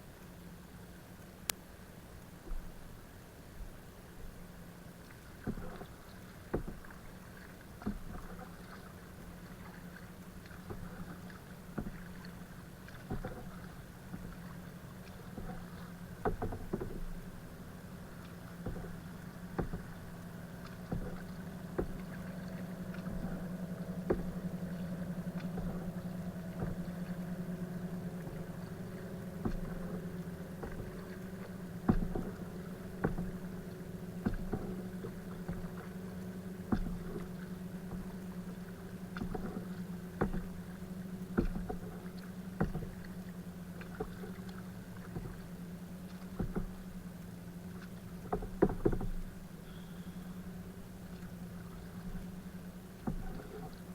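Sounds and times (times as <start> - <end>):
paddle strokes in water: 0.0 - 53.9
steady low hum: 0.0 - 53.9
knocks on kayak hull: 6.5 - 6.9, 15.3 - 17.3, 18.6 - 20.1, 20.8 - 22.2, 23.0 - 24.5, 25.4 - 27.0, 29.4 - 33.6, 34.2 - 38.2, 39.1 - 42.0, 42.6 - 43.1, 46.1 - 46.9, 48.2 - 50.2, 53.0 - 53.7.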